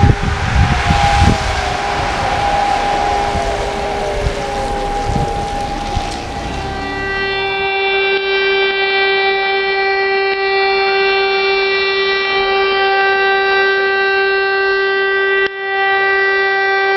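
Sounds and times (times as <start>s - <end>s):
siren steady tone: 0.0s - 7.7s.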